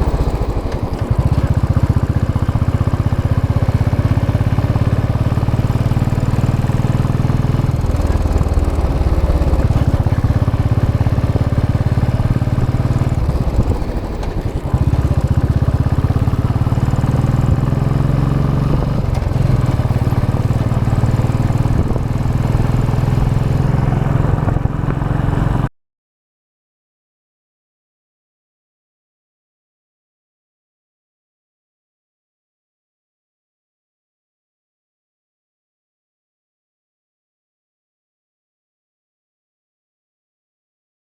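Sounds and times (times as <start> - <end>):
motorcycle engine running: 0.0 - 25.7.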